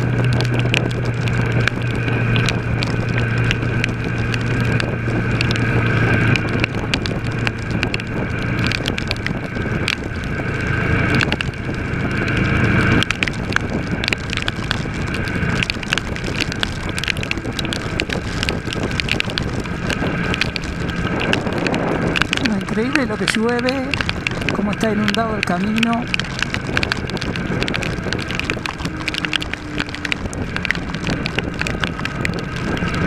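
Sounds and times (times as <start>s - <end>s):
motorcycle engine running: 0.0s - 33.0s
raindrops clicking: 0.0s - 33.0s
wind and rain spray rushing: 0.0s - 33.0s.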